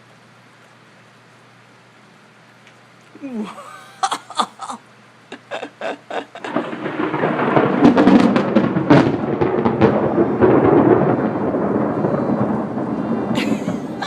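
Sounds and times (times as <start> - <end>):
thunder rumbling and cracking: 6.1 - 14.0.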